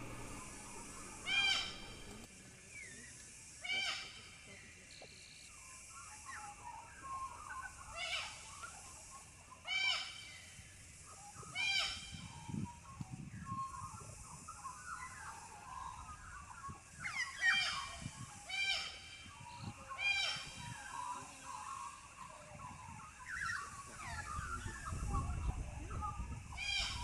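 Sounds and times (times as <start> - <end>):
bird calling loudly: 0.0 - 2.3
birds chirping softly: 0.0 - 2.3.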